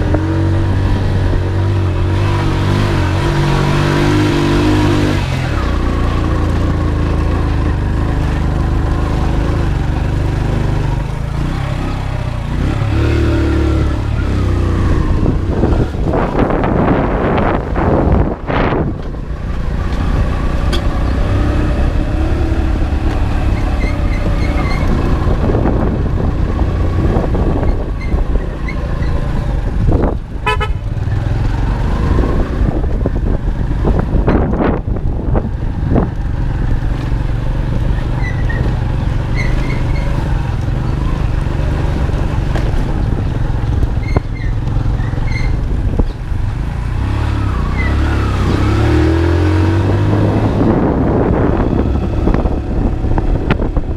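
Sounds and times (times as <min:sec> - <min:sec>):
motorcycle engine running: 0:00.0 - 0:53.9
wind buffeting microphone: 0:00.0 - 0:53.9
vehicle horn toots: 0:30.4 - 0:30.9.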